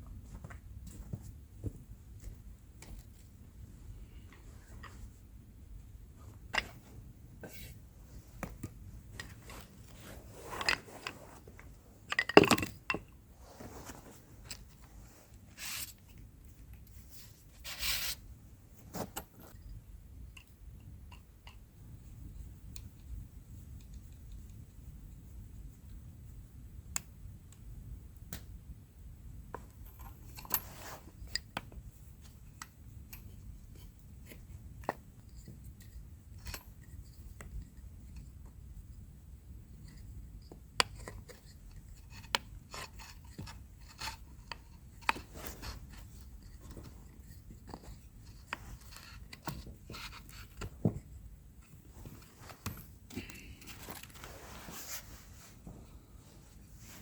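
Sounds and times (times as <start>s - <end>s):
scraping and rubbing: 6.2s - 11.8s, 17.1s - 18.2s, 41.0s - 51.2s, 53.7s - 55.7s.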